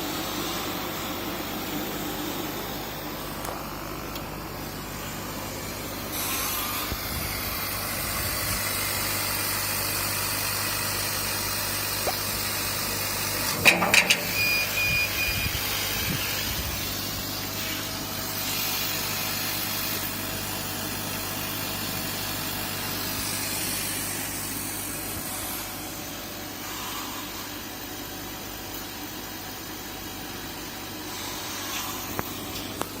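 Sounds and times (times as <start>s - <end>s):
sharp clicks and knocks: 13.5s - 14.6s.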